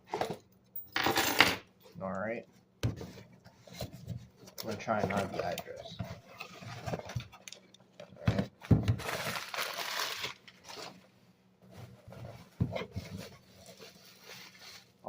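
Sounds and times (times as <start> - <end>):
packaging rustling and crinkling: 3.7 - 15.0.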